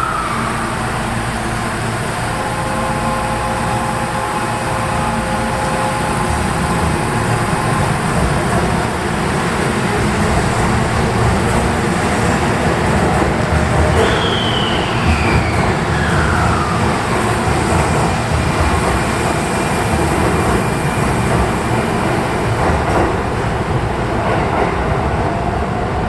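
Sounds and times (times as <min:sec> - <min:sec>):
train motor whine: 0:00.0 - 0:19.2
electric train rumbling: 0:00.0 - 0:26.0.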